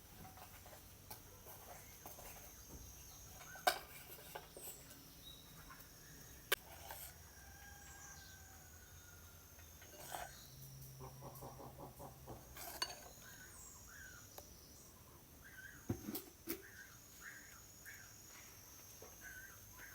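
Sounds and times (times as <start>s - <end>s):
chickens clucking: 11.0s - 13.7s
high insect trill: 12.4s - 19.9s.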